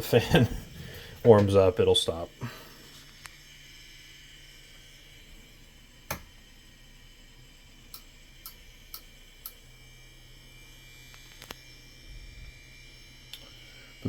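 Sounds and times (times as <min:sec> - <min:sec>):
cooling fan humming: 0:00.0 - 0:14.0
sharp click: 0:06.1 - 0:06.3.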